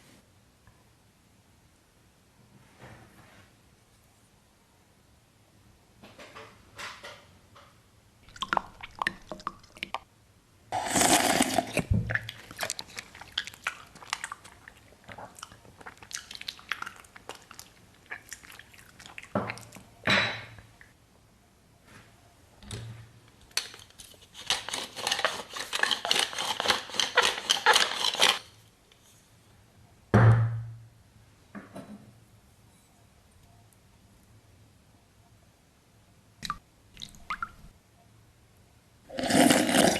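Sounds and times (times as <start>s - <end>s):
wet chewing and crunching: 11.0s - 19.9s.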